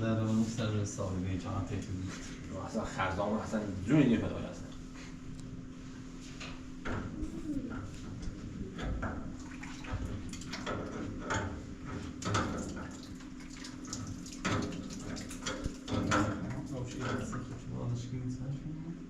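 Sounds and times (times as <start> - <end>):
knocks and clatter: 6.8 - 12.9, 14.4 - 17.5
water splashing and dripping: 9.4 - 11.5, 12.2 - 17.4.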